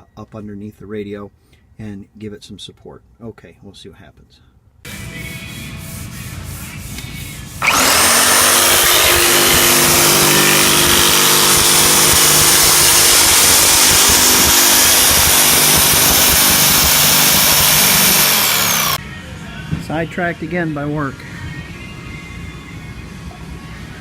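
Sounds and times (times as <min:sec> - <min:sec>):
power tool whining: 0:07.6 - 0:19.0.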